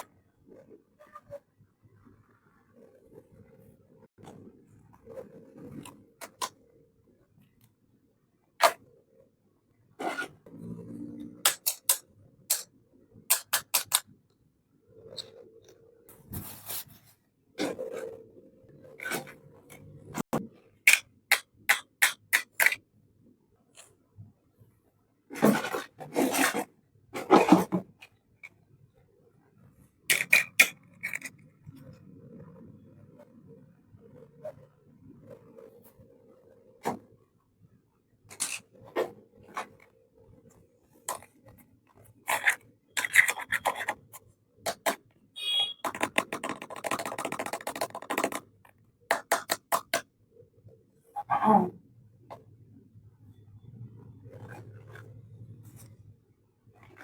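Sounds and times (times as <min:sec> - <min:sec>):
plastic toy pieces clicking: 0:11.5 - 0:12.7, 0:13.3 - 0:14.1, 0:20.9 - 0:22.8, 0:30.1 - 0:31.3, 0:38.3 - 0:38.6, 0:42.3 - 0:44.0, 0:45.8 - 0:48.5, 0:49.1 - 0:50.0
plastic toy pieces rustling: 0:30.1 - 0:31.3, 0:38.3 - 0:38.6, 0:42.2 - 0:44.0.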